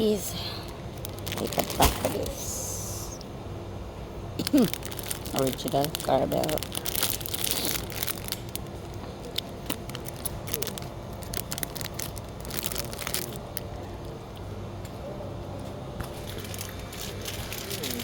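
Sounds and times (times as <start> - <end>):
steady low hum: 0.0 - 18.0
packaging clicks and crinkling: 1.0 - 2.4, 4.4 - 13.7, 16.0 - 18.0.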